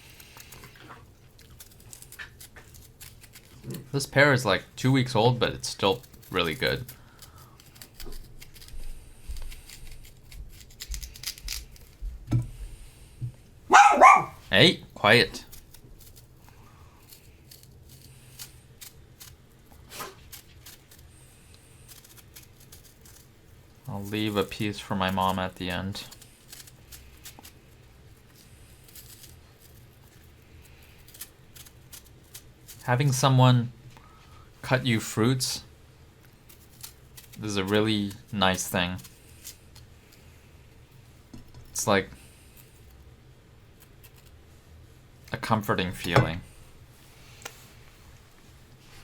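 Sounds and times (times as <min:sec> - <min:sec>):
crunching and chewing pear: 0:00.0 - 0:04.0, 0:05.0 - 0:12.2, 0:13.7 - 0:32.8
low steady hum: 0:00.0 - 0:49.0
person chewing crunchy fruit: 0:05.9 - 0:12.0, 0:25.2 - 0:32.8
dog barking: 0:13.7 - 0:14.4.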